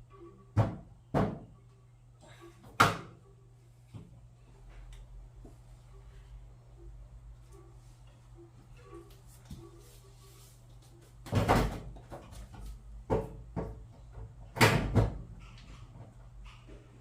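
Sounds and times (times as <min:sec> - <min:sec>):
washing machine clunks and knocks: 0:00.5 - 0:01.6, 0:02.7 - 0:03.2, 0:11.2 - 0:12.4, 0:13.0 - 0:15.4.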